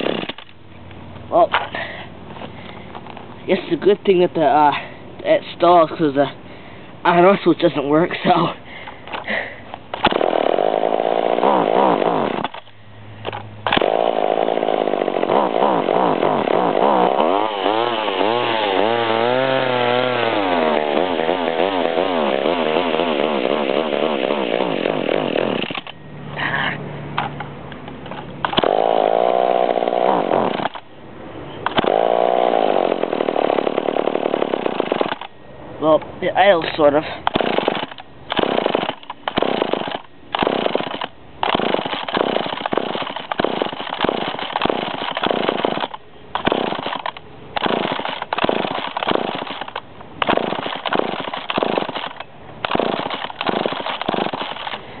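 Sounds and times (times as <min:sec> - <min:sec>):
chainsaw engine revving unevenly: 0:10.0 - 0:12.5, 0:13.7 - 0:25.7, 0:28.6 - 0:30.7, 0:31.7 - 0:35.1.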